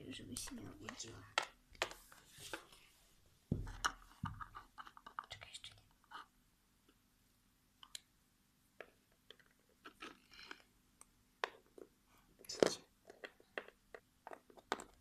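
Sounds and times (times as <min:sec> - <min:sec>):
plastic toy figures clicking and knocking: 0:11.4 - 0:15.0.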